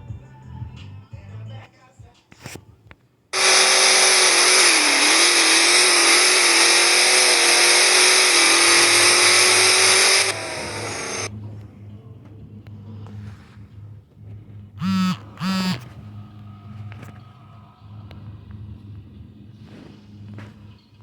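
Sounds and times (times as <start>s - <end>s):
drag race cars engine roar: 3.4s - 11.3s.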